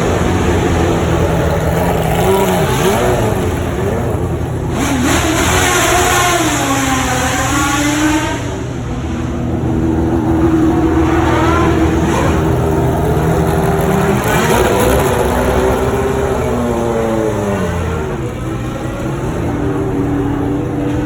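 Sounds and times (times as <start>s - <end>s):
car engine revving: 0.0s - 21.0s.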